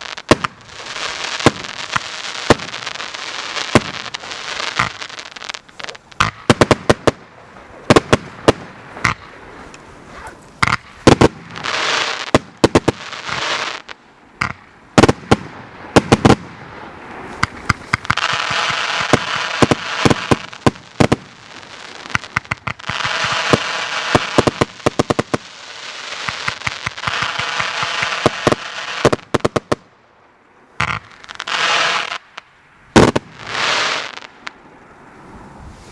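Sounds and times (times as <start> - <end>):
fireworks crackling: 0.0 - 30.1, 30.8 - 35.9
fireworks shots and bangs: 1.4 - 3.0, 3.7 - 4.1, 6.2 - 9.4, 10.6 - 13.4, 14.4 - 16.6, 17.4 - 21.4, 33.0 - 34.0.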